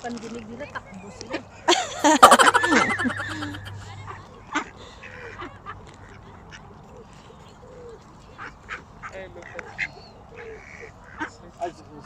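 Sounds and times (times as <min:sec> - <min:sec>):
ducks quacking: 0:02.2 - 0:04.7.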